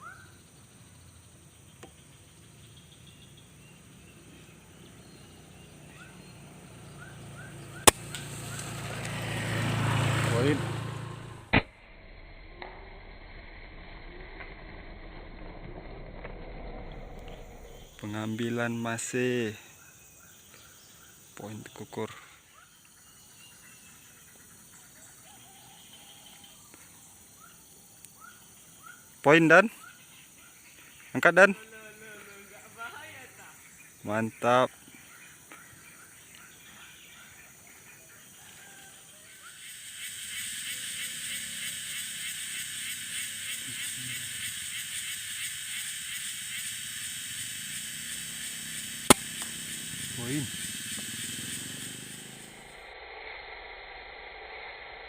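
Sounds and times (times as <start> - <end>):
faint bird chirps: 0.0 - 8.7, 16.8 - 39.7
insects droning: 0.0 - 55.0
low motor hum: 6.4 - 18.1.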